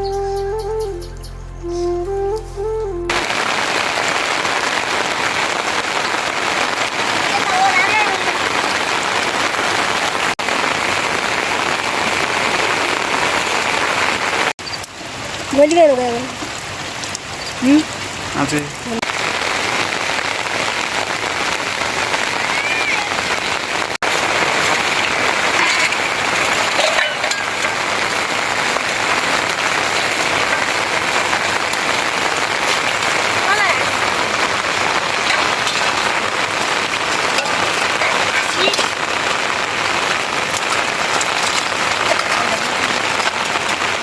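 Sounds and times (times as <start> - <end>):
steady rain falling: 2.2 - 44.0.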